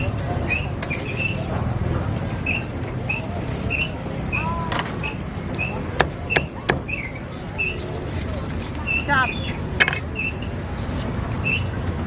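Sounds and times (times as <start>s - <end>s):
short high squeaks: 0.0s - 12.0s
street traffic rumble: 0.0s - 12.0s.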